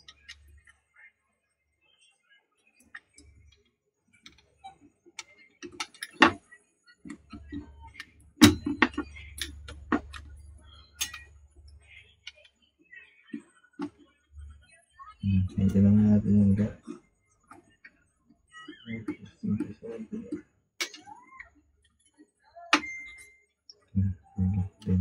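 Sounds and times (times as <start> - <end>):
faint low hum: 6.4 - 20.4, 21.0 - 25.0.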